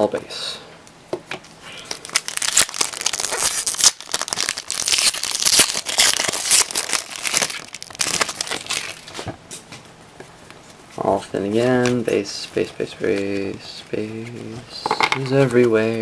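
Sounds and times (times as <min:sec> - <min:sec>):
card pack wrapper crinkling: 0:01.8 - 0:09.3.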